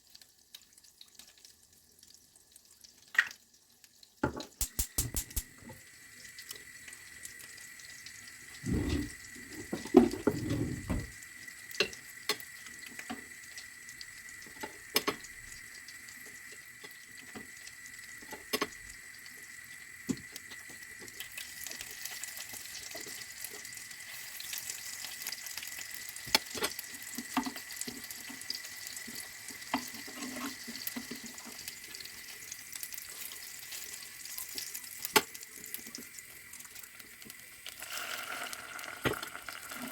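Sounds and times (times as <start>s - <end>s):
tap water running into sink: 4.2s - 5.8s, 8.6s - 13.4s, 34.6s - 39.9s.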